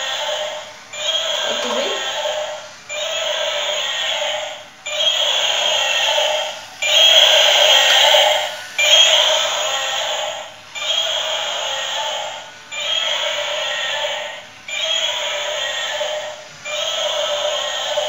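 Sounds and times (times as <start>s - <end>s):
toy dinosaur electronic call: 12.7s - 18.0s.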